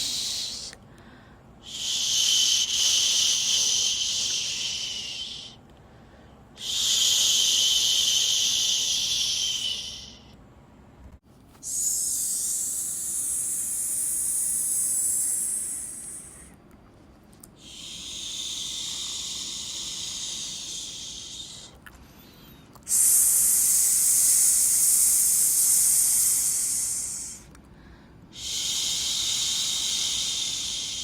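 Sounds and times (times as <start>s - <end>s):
shushing hisses: 0.0s - 0.8s, 1.6s - 5.6s, 6.6s - 10.4s, 11.6s - 16.6s, 17.6s - 21.8s, 22.8s - 27.5s, 28.3s - 31.0s.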